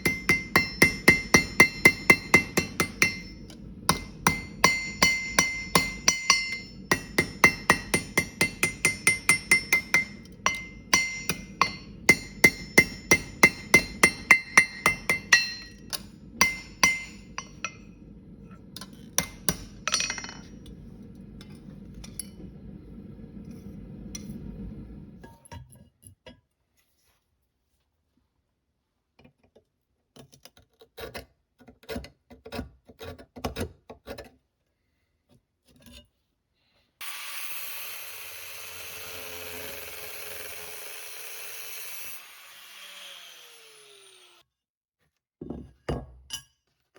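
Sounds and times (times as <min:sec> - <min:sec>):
hammer striking metal on anvil: 0:00.0 - 0:17.9, 0:18.8 - 0:20.7
low steady hum: 0:00.0 - 0:25.3.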